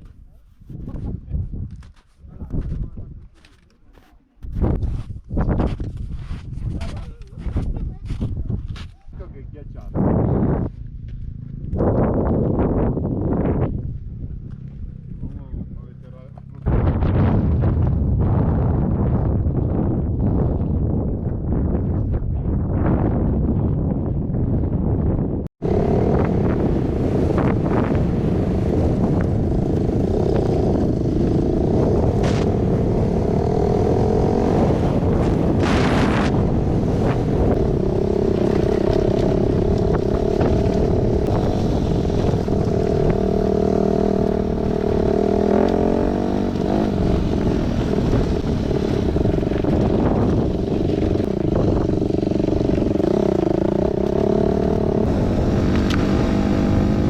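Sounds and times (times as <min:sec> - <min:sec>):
motorcycle engine revving: 0:25.6 - 0:57.0.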